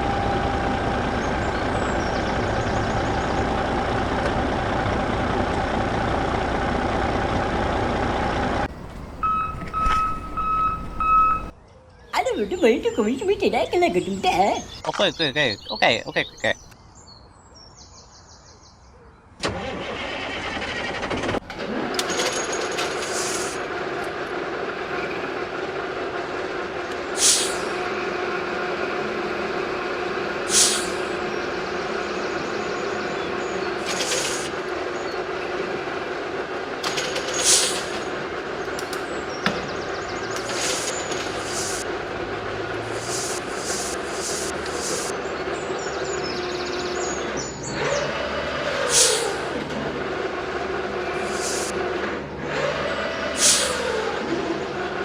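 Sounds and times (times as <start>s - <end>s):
short scraping hiss: 30.5s - 31.0s, 40.4s - 41.8s, 42.9s - 45.2s, 48.8s - 49.5s, 51.2s - 51.7s.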